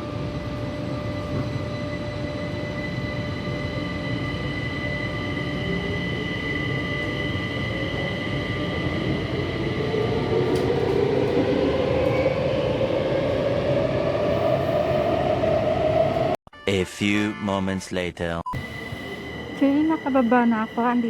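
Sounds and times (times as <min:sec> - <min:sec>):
metro train rumbling: 0:00.0 - 0:16.4, 0:18.6 - 0:21.0
train motor whine rising: 0:18.6 - 0:21.0.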